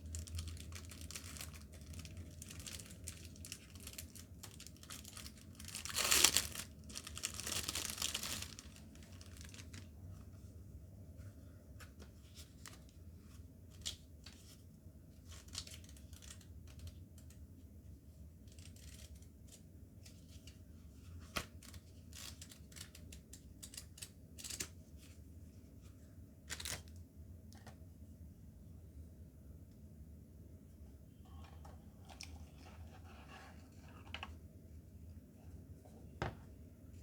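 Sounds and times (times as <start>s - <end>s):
packaging clicks and rustles: 0.0s - 9.9s
low steady hum: 0.0s - 37.0s.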